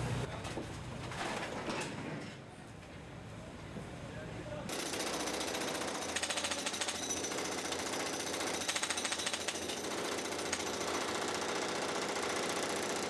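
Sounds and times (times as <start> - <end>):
jackhammer breaking concrete: 4.7 - 13.0.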